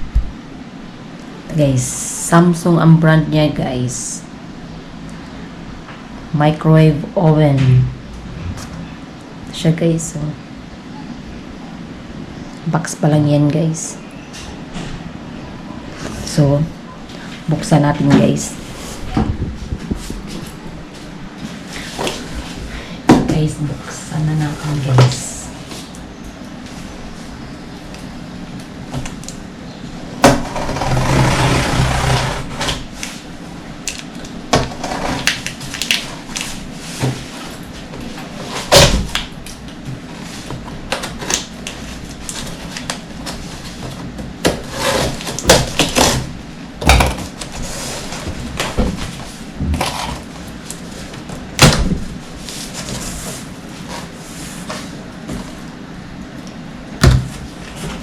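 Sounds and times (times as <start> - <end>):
cardboard box scraping and rustling: 44.6 - 45.4, 47.5 - 51.1
knocks and thumps: 57.0 - 57.4.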